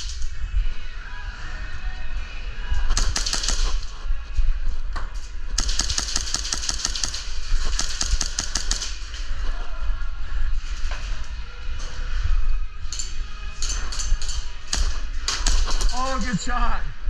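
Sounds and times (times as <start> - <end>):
airsoft guns firing: 2.9 - 4.0, 5.6 - 9.3, 14.7 - 16.2.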